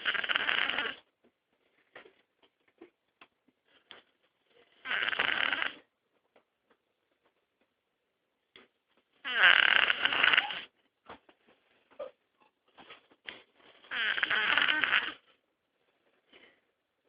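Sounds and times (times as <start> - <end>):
person snoring: 9.3 - 10.7, 13.9 - 15.2.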